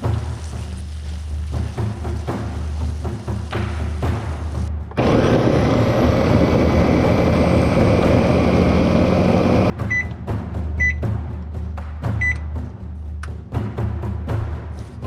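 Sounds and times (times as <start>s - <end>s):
kitchen appliance whirring: 4.9s - 9.7s
short electronic beeps: 9.8s - 10.1s.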